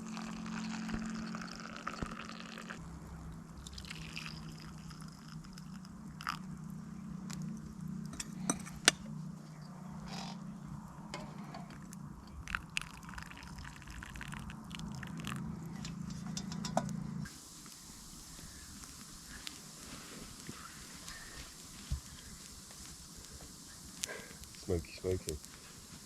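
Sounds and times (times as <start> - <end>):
campfire crackling and popping: 0.0 - 9.1, 10.8 - 26.0
steady low hum: 0.0 - 26.0.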